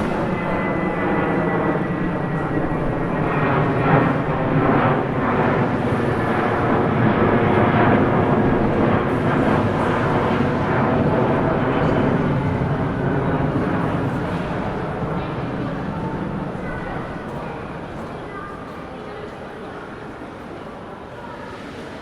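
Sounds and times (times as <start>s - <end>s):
airplane engines roaring: 0.0s - 22.0s.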